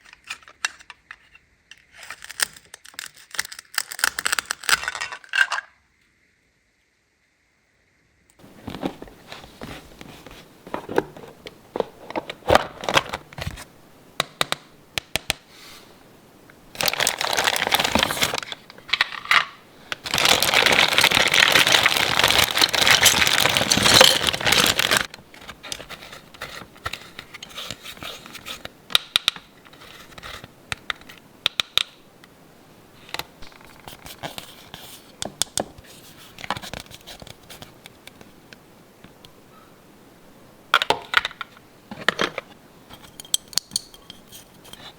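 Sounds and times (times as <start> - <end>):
packaging clicks and taps: 14.2 - 15.4
plastic crinkling and tearing: 16.7 - 28.3.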